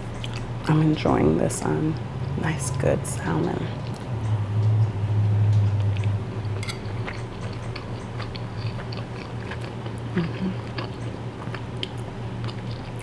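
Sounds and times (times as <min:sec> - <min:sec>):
steady low hum: 0:00.0 - 0:13.0
wet chewing and mouth smacks: 0:03.8 - 0:04.8, 0:05.5 - 0:13.0.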